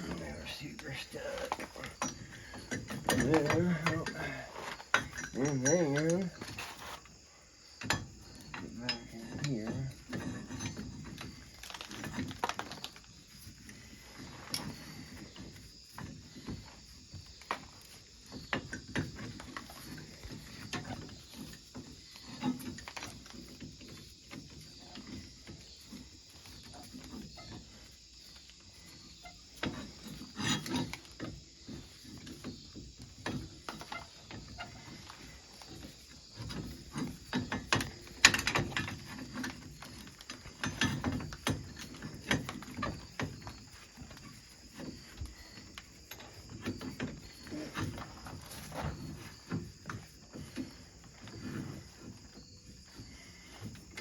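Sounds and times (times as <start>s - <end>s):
metal clanks: 0.0s - 6.9s, 7.7s - 27.9s, 28.7s - 52.2s
hand tools clicking and clinking: 0.0s - 7.1s.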